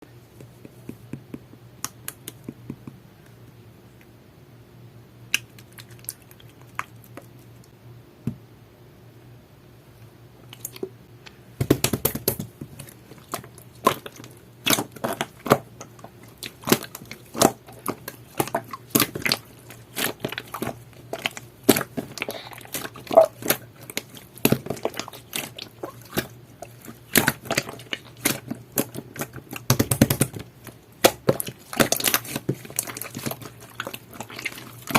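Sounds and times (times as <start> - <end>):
slime squished by hand: 11.8 - 34.9.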